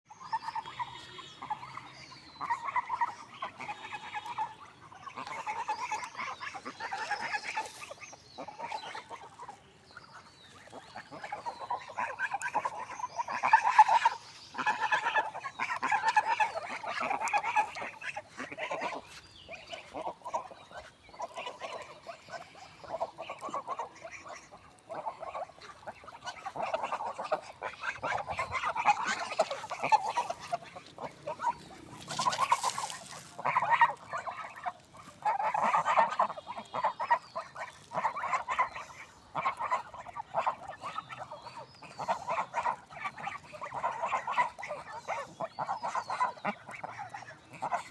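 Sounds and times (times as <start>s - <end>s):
swans calling: 0.1s - 47.9s.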